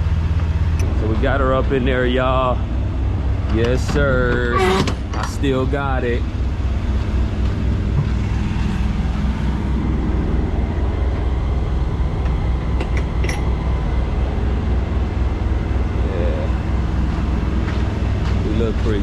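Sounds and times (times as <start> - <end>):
diesel truck engine droning: 0.0 - 19.0.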